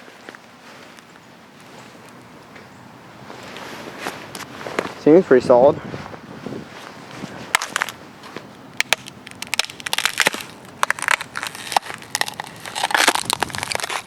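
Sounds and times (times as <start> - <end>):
ice crunching underfoot: 6.8 - 14.0.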